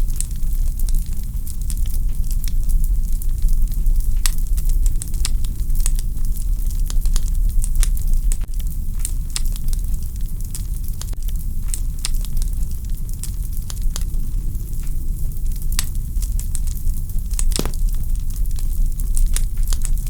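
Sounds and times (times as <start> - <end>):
logs crackling and popping: 17.6 - 18.0
flames rumbling: 17.6 - 18.1.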